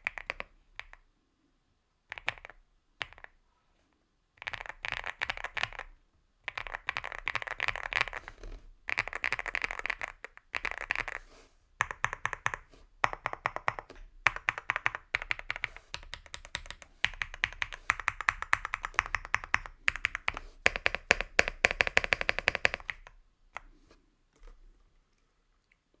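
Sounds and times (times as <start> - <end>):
mechanical keyboard typing: 0.0 - 1.0, 2.1 - 3.4, 4.4 - 11.2, 11.8 - 23.1.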